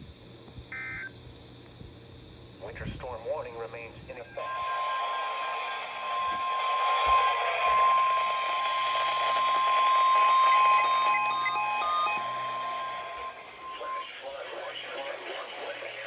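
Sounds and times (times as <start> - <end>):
radio noise hiss: 1.8 - 16.0
steady alert tone: 4.3 - 14.2.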